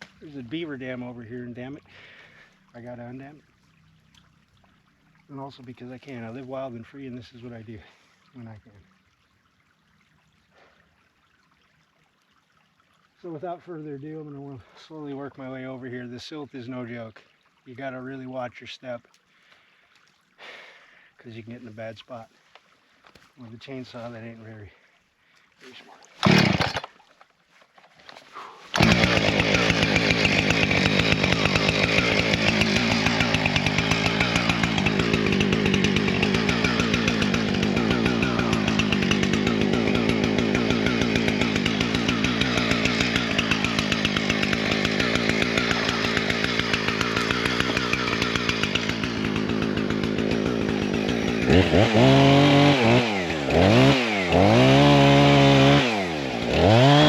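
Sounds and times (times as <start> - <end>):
chainsaw cutting wood: 0.0 - 2.2, 26.2 - 27.0, 28.0 - 57.0.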